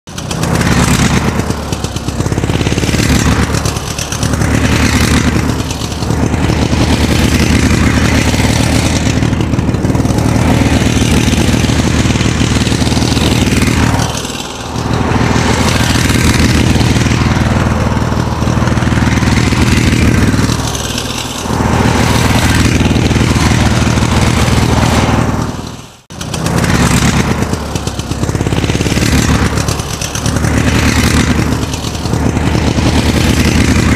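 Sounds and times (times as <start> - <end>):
engine running loudly: 0.0 - 33.9.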